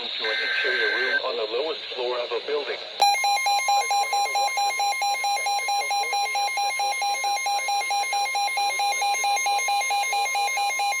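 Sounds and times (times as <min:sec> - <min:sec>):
fast electronic alarm beeping: 0:00.3 - 0:01.2, 0:03.0 - 0:11.0.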